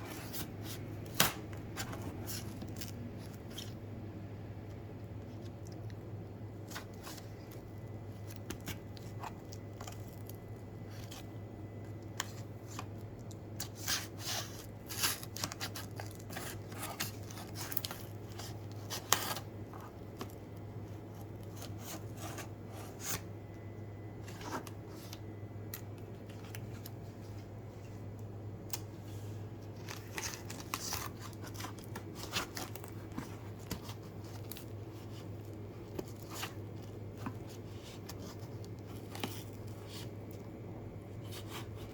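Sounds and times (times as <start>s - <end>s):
steady low hum: 0.0s - 41.9s
cardboard packaging crackling: 29.6s - 40.6s.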